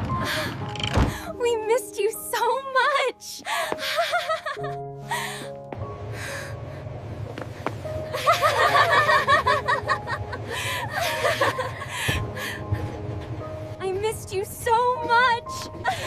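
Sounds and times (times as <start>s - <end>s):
group of people laughing: 3.9s - 4.8s, 8.1s - 11.9s.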